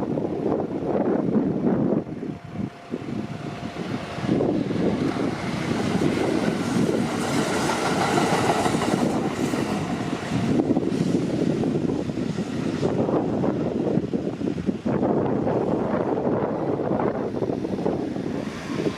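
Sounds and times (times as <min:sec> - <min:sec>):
train wheels rumbling and clattering: 0:02.7 - 0:13.8.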